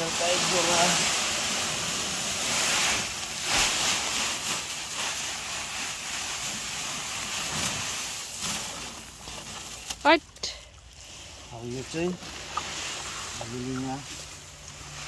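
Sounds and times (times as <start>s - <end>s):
feed pellets pouring: 0.0s - 10.0s.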